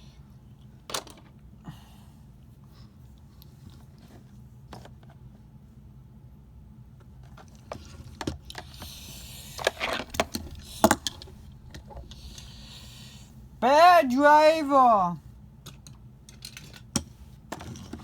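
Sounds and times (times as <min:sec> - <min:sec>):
hiss: 0:08.7 - 0:13.4.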